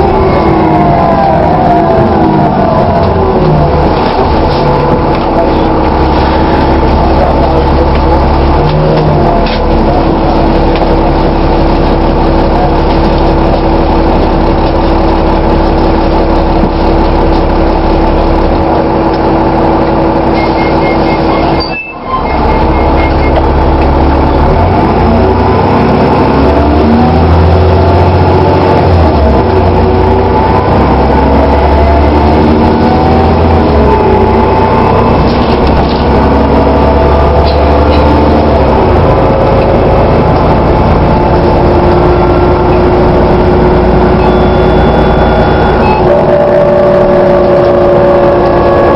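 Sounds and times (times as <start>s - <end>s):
bus engine drone: 0.0s - 48.9s
high whine: 26.3s - 48.9s.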